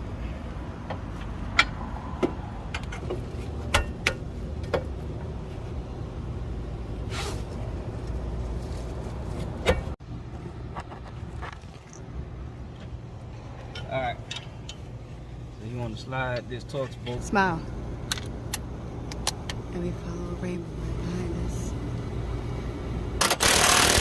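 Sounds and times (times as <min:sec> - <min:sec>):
sharp metal clanks and knocks: 0:00.9 - 0:04.8.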